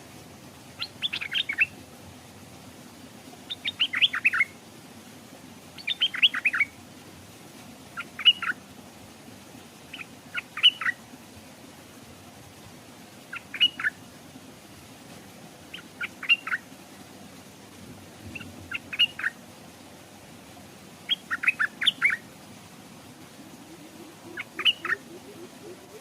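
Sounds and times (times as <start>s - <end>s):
bird singing short phrases: 24.3s - 26.0s.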